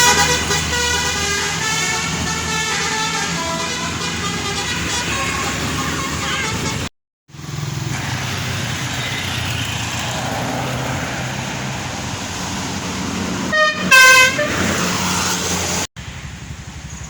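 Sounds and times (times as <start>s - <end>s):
bus air horn notes: 0.0s - 6.9s, 13.5s - 14.7s
bus engine droning: 0.0s - 16.8s.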